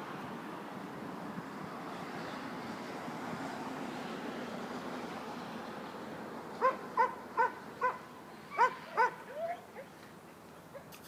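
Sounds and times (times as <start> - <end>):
dog barking in high yips: 6.6 - 9.9
dog whining: 8.5 - 9.9.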